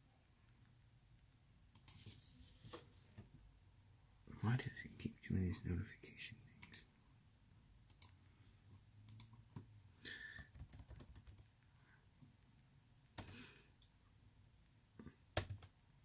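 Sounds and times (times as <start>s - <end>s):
keyboard and mouse clicks: 1.7s - 2.8s, 7.9s - 8.2s, 9.1s - 9.7s, 10.4s - 11.5s, 13.2s - 13.4s, 15.3s - 15.8s.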